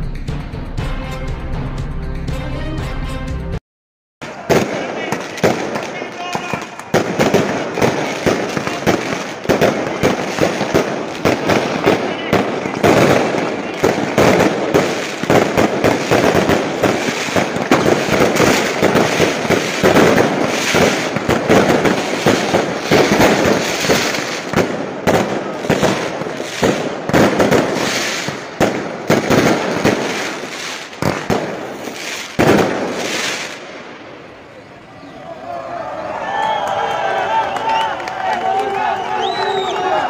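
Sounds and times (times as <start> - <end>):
firecrackers crackling: 4.2 - 35.0, 35.7 - 40.0.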